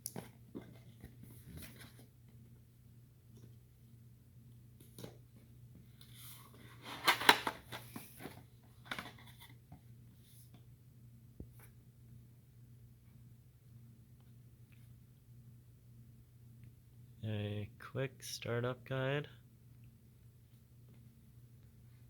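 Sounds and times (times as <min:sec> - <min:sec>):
low steady hum: 0:00.0 - 0:22.0
packaging rustling: 0:06.1 - 0:09.5.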